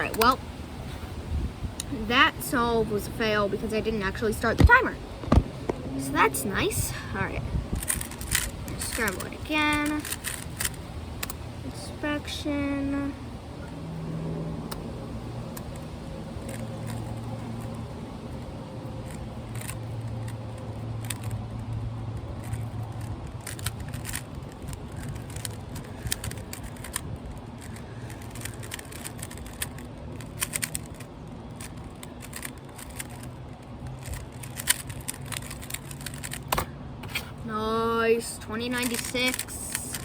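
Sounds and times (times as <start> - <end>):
wind rumble on microphone: 0.0 - 36.2
plastic puzzle cube layers clicking: 7.7 - 11.4, 15.5 - 36.7, 38.6 - 40.0.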